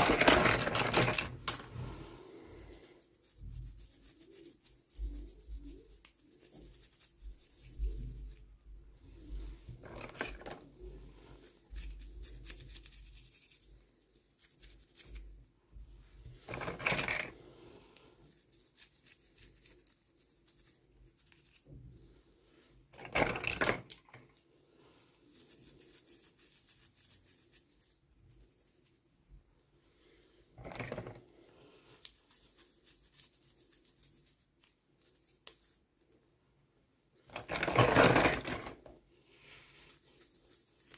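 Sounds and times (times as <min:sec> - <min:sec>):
plastic and paper rustling: 0:00.0 - 0:02.0, 0:37.3 - 0:38.8.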